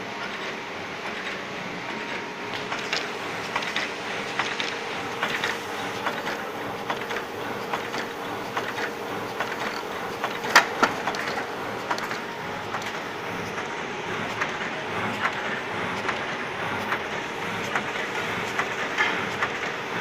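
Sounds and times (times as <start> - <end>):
rapid clattering clicks: 0.3 - 13.7.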